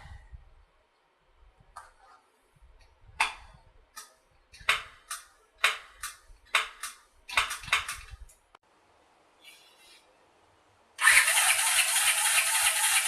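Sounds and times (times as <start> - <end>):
tool tapping on metal: 3.2 - 8.2.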